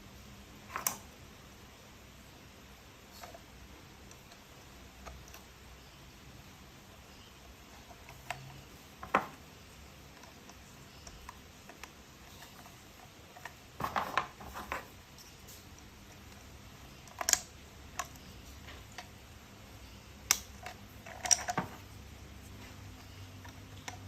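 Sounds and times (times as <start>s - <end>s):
plastic toy parts clicking: 3.1s - 5.5s, 7.4s - 19.3s, 20.1s - 22.1s.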